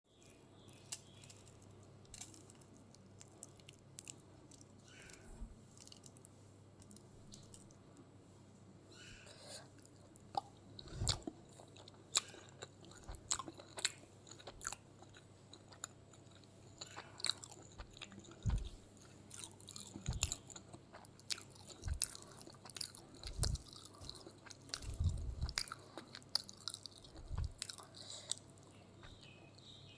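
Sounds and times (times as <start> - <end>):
crunchy bites: 12.2 - 29.3
soft low thumps: 18.4 - 18.8, 20.0 - 20.4, 23.3 - 23.6, 24.8 - 25.6, 27.2 - 27.6.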